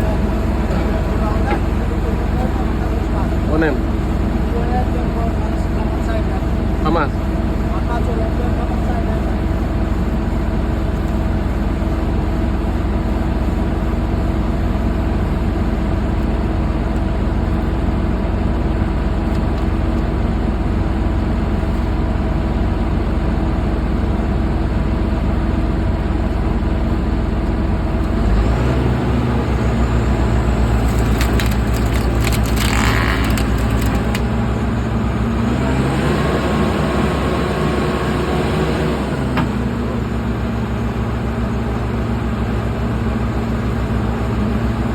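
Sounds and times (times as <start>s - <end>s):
bulldozer diesel engine running: 0.0s - 44.9s
sharp cracks: 30.7s - 34.3s.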